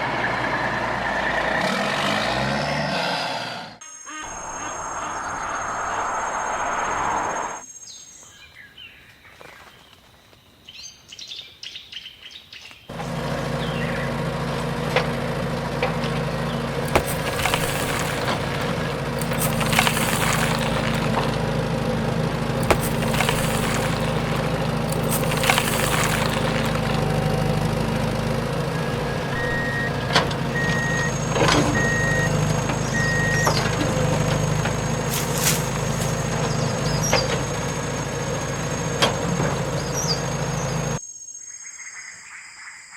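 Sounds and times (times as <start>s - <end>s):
heavy vehicle engine droning: 0.0s - 7.6s, 12.9s - 41.0s
birds chirping: 3.9s - 10.0s, 10.8s - 14.2s.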